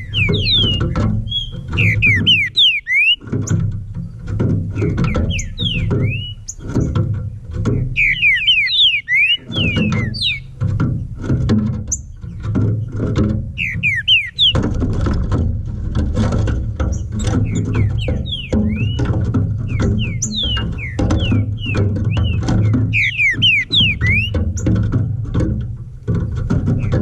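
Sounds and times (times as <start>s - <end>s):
bird singing slurred whistles: 0.0s - 3.6s, 4.8s - 6.6s, 7.8s - 10.5s, 13.6s - 14.6s, 16.9s - 24.7s
background music with steady beat: 9.4s - 27.0s.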